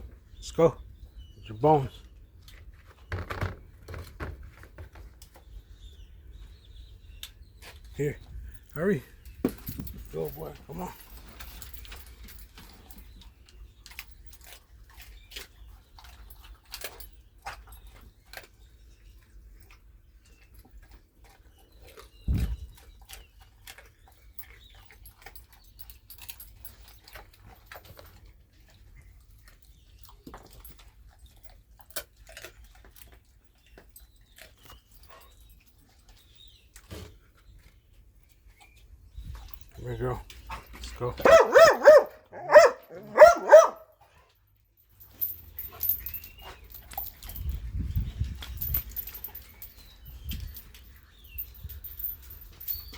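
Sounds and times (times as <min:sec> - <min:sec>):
dog chewing bones: 0:22.8 - 0:37.9.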